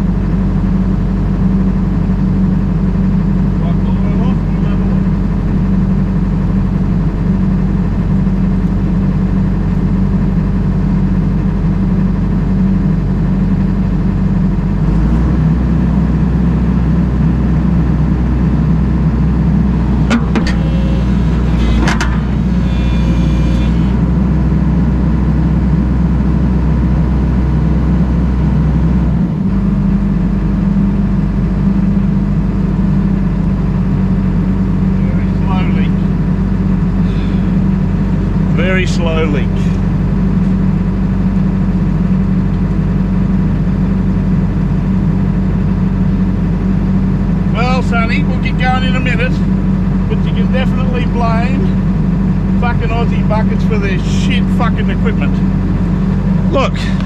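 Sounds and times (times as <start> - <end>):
deep low hum: 0.0 - 57.0
excavator engine running: 0.0 - 57.0.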